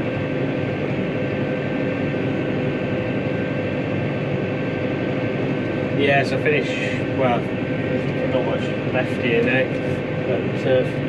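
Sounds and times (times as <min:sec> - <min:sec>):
tractor engine droning: 0:00.0 - 0:11.0.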